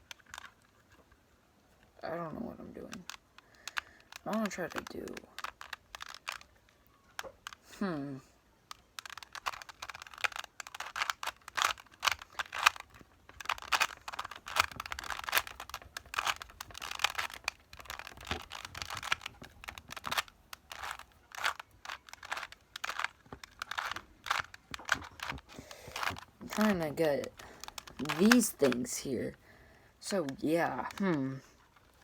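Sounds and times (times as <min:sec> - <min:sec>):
puzzle cube clicking and rattling: 0:00.0 - 0:32.0.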